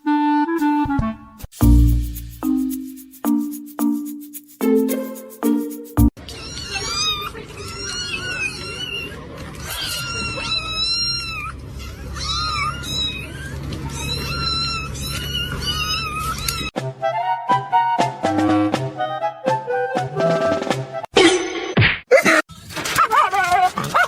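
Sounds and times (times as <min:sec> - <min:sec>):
cat meowing: 0:06.3 - 0:16.7.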